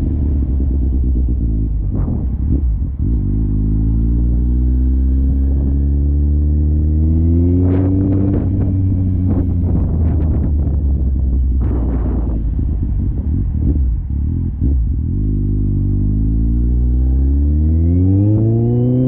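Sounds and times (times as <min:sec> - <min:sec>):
engine revving: 0:00.0 - 0:19.0
wind buffeting microphone: 0:07.5 - 0:14.9.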